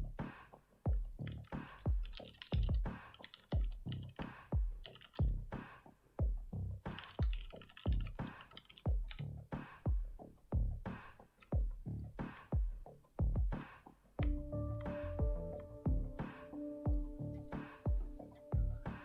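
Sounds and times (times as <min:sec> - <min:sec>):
deep kick drums: 0:00.0 - 0:00.3, 0:00.9 - 0:01.2, 0:01.9 - 0:02.9, 0:04.6 - 0:05.6, 0:06.2 - 0:06.6, 0:08.9 - 0:09.2, 0:09.9 - 0:11.0, 0:11.6 - 0:13.6, 0:14.2 - 0:17.2, 0:17.8 - 0:19.0
clicky percussion: 0:01.2 - 0:05.3, 0:06.9 - 0:09.2
electronic music: 0:14.2 - 0:19.0.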